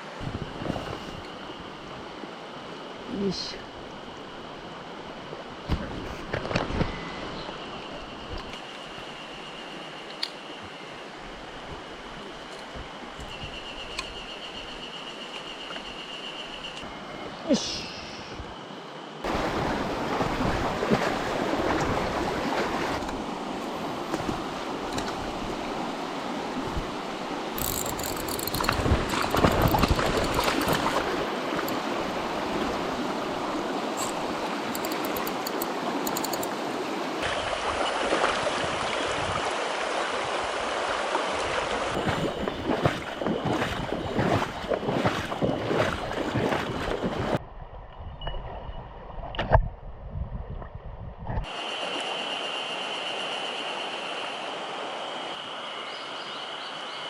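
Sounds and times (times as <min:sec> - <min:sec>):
stream water rushing: 0:18.6 - 0:47.4, 0:51.5 - 0:57.0.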